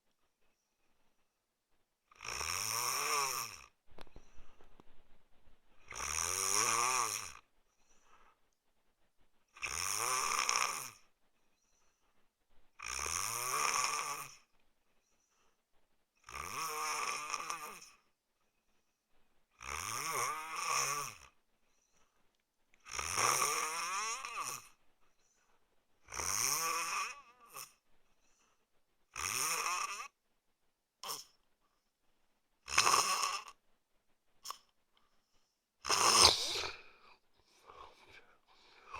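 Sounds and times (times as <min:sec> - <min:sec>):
man snoring: 0:02.2 - 0:03.7, 0:05.9 - 0:07.4, 0:09.6 - 0:11.0, 0:12.8 - 0:14.4, 0:16.2 - 0:18.0, 0:19.6 - 0:21.4, 0:22.9 - 0:24.7, 0:26.1 - 0:27.7, 0:29.2 - 0:30.1, 0:31.0 - 0:31.3, 0:32.7 - 0:33.6, 0:35.8 - 0:38.9
faint breaths: 0:03.9 - 0:06.0, 0:07.4 - 0:09.6, 0:14.4 - 0:15.9, 0:21.3 - 0:22.4, 0:27.8 - 0:28.9, 0:34.4 - 0:38.9.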